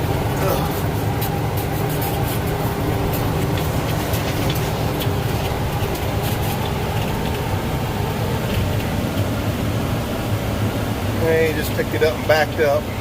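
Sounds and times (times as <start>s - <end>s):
light rattles and clicks: 0.0s - 9.4s
tractor engine running under load: 0.0s - 13.0s.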